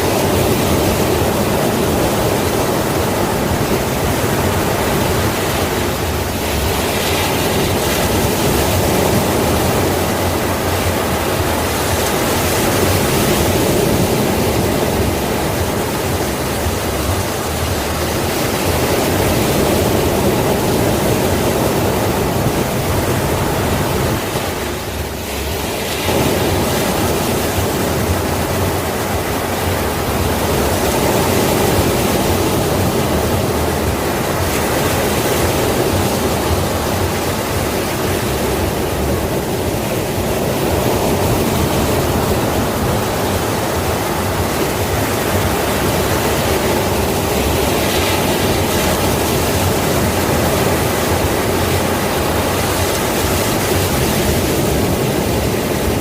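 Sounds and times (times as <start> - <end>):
sea waves breaking on shore: 0.0 - 56.0.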